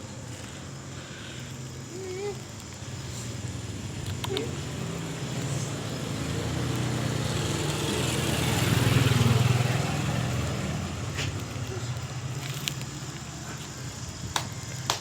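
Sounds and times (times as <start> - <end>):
vehicle engine passing by: 2.8 - 13.6.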